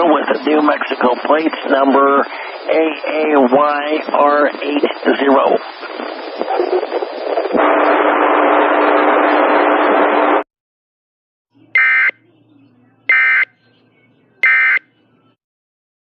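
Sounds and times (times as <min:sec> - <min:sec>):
radio static: 0:00.0 - 0:10.4, 0:11.8 - 0:12.2, 0:13.1 - 0:13.5, 0:14.4 - 0:14.8
data-tone bursts: 0:11.8 - 0:12.2, 0:13.1 - 0:13.5, 0:14.4 - 0:14.9.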